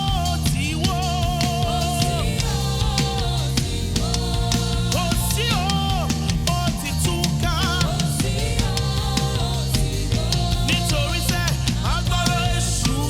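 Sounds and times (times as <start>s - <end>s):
gospel band playing: 0.0s - 13.0s
lead singer singing: 0.0s - 13.0s.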